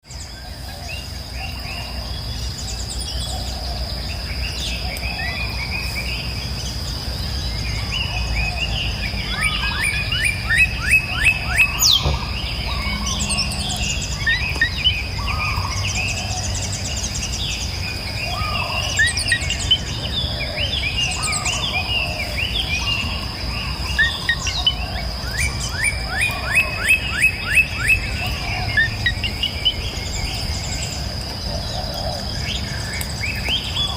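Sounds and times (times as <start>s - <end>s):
birds chirping and singing: 0.0s - 33.9s.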